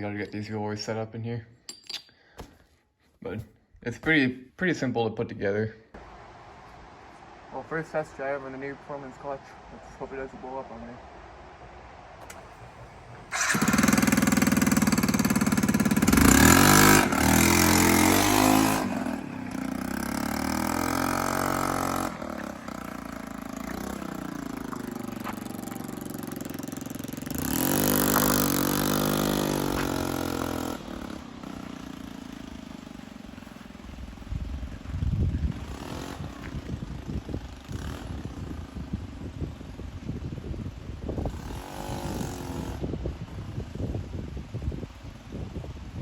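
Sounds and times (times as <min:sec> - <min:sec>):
wind rushing: 0:06.0 - 0:26.5
scooter engine revving: 0:12.2 - 0:39.3, 0:41.2 - 0:43.4.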